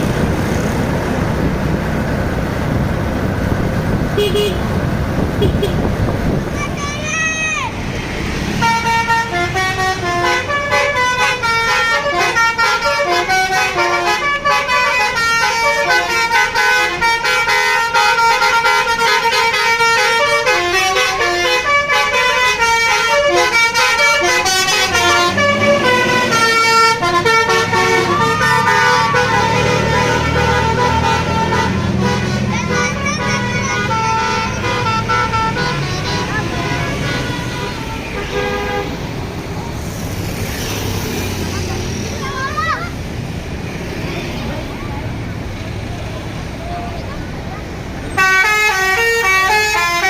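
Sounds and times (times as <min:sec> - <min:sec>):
bus musical horn tune: 0:04.2 - 0:04.7, 0:05.4 - 0:05.9, 0:08.5 - 0:39.0, 0:48.1 - 0:50.0.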